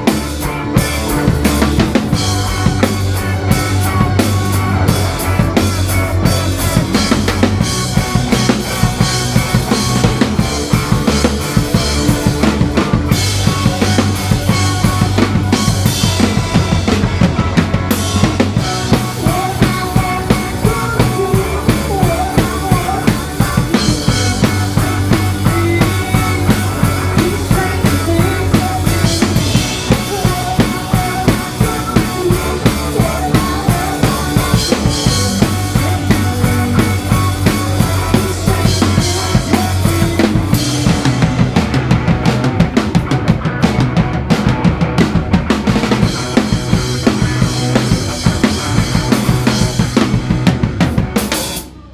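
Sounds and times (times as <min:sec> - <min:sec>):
live rock band playing: 0:00.0 - 0:51.9
sustained bass notes: 0:00.0 - 0:51.9.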